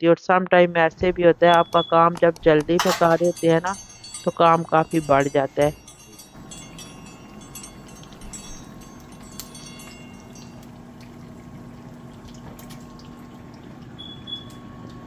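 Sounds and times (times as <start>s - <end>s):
dishes clinking: 1.6s - 11.8s.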